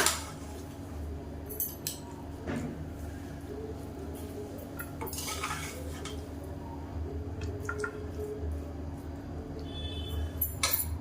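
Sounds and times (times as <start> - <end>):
low steady hum: 0.0 - 11.0
metal spoon scraping a pot: 5.0 - 6.2.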